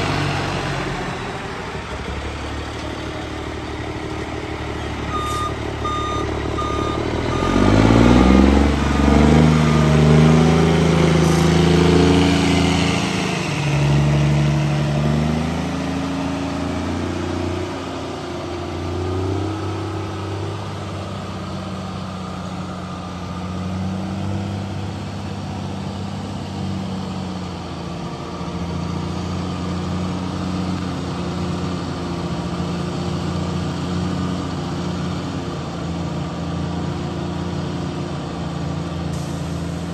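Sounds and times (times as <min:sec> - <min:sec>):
diesel engine revving: 0:00.0 - 0:39.9
backup alarm beeping: 0:05.1 - 0:08.2.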